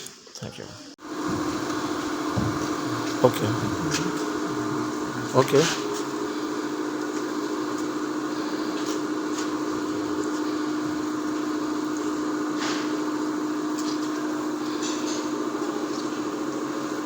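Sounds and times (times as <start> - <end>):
mechanical hum with tone: 0.1 - 17.0
steady hiss: 1.0 - 11.8.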